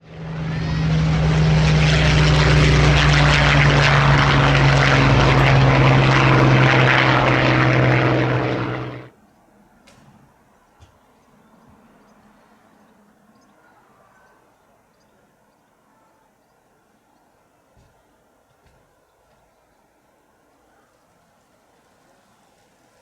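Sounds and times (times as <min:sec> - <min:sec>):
jet engines passing overhead: 0:00.0 - 0:09.2.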